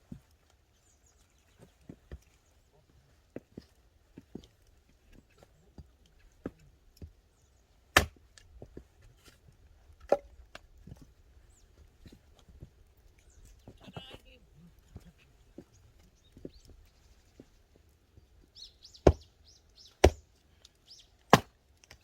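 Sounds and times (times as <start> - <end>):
firewood being split: 7.8 - 10.8, 19.9 - 22.0.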